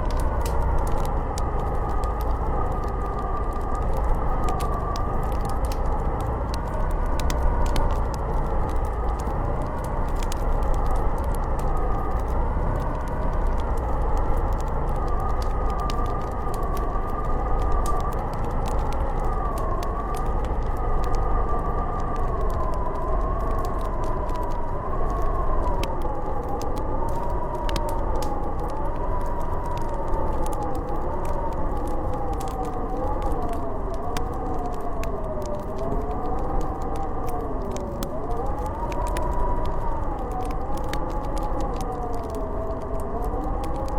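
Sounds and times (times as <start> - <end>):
low rumble: 0.0 - 25.8
wind howling: 0.0 - 43.9
wood fire crackling: 0.0 - 43.9.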